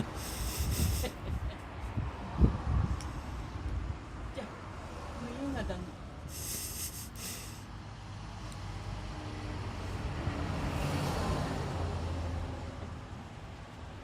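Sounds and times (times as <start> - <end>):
vehicle engine passing by: 4.6 - 13.6.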